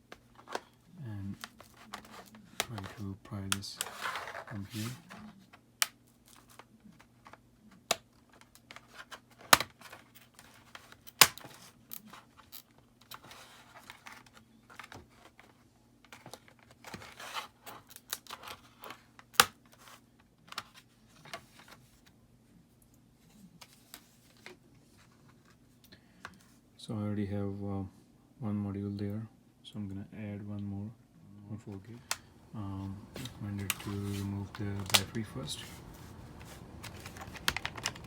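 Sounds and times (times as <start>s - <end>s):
plastic clips clicking and scraping: 33.0s - 38.0s.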